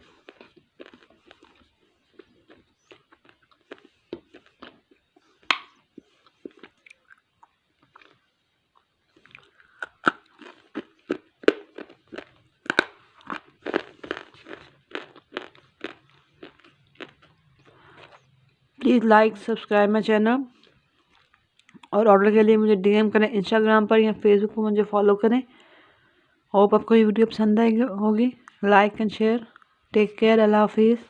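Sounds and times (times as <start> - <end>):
crunching and chewing clay: 0.0 - 18.5, 20.5 - 22.0.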